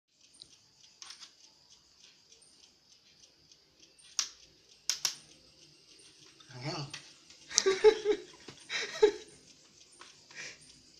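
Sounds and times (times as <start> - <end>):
netbook clicks and taps: 4.0 - 5.2.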